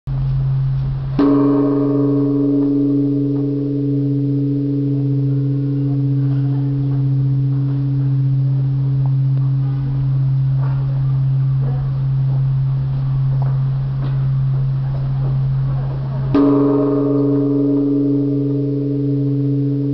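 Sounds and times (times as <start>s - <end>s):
deep hum: 0.1s - 19.9s
large temple bell ringing: 0.4s - 19.9s.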